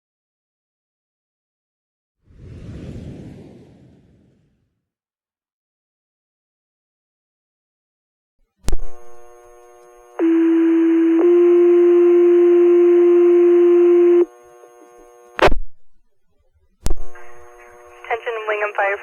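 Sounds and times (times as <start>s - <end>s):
radio click: 8.6s - 10.2s, 15.4s - 15.6s
faint radio hiss: 8.7s - 15.6s, 16.2s - 19.0s.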